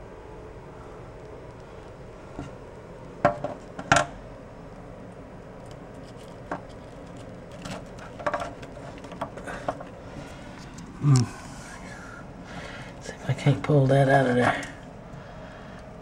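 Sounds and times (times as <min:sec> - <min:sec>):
clicks and scrapes in drain sump: 0:05.7 - 0:10.8.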